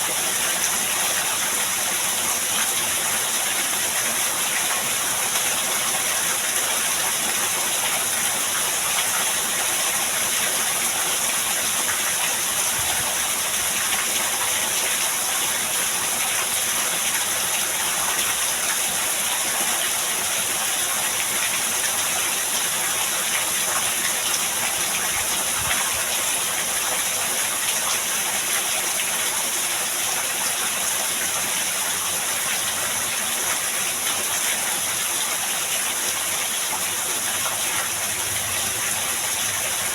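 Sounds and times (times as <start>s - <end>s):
heavy rain pouring: 31.2s - 39.9s.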